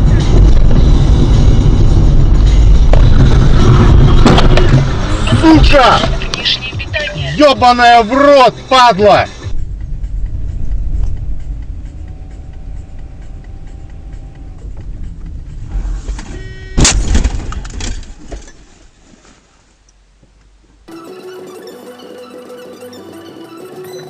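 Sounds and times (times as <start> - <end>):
car road rumble: 0.0 - 20.9
car collision bang: 16.8 - 18.2.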